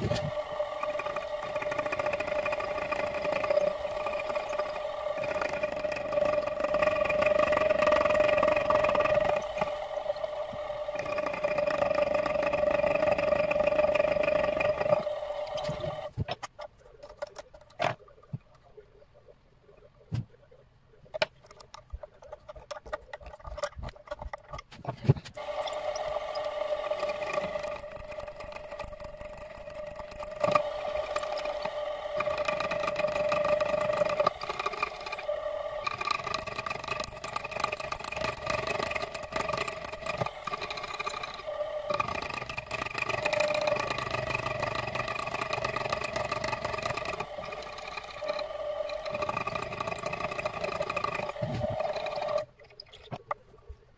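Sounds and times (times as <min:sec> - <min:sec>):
machine whining: 0:00.0 - 0:16.1, 0:25.4 - 0:53.2
sharp clicks and knocks: 0:21.0 - 0:25.4.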